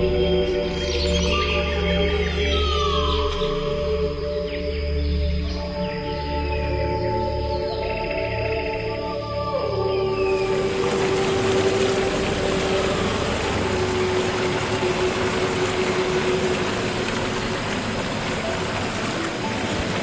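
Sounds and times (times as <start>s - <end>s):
forest ambience rushing noise: 10.1s - 20.0s.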